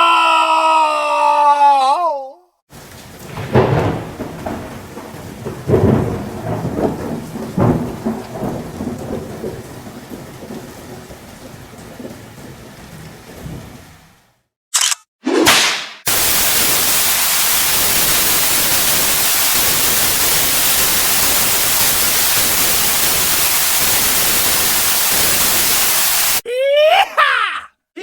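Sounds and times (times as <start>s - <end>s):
whip-like whooshes: 15.2s - 16.1s
steady static hiss: 16.1s - 26.4s.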